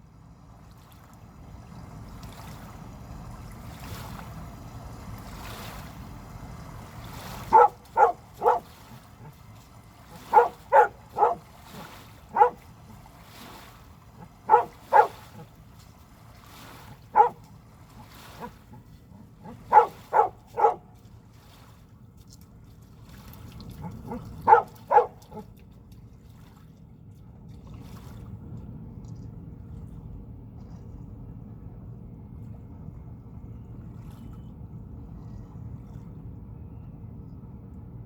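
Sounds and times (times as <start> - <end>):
dog barking: 7.5 - 8.7, 10.1 - 11.4, 12.3 - 12.7, 14.2 - 15.4, 17.1 - 17.4, 19.4 - 20.9, 24.1 - 25.4.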